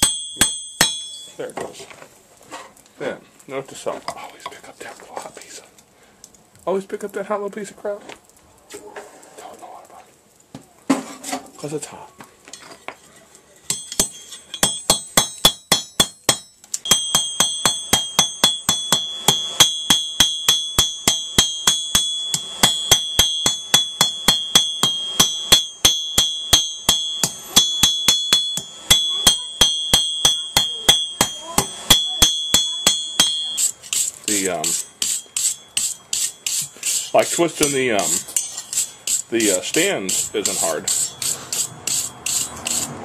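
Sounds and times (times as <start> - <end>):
hammer striking steel on anvil: 0.0 - 1.4, 13.7 - 42.9.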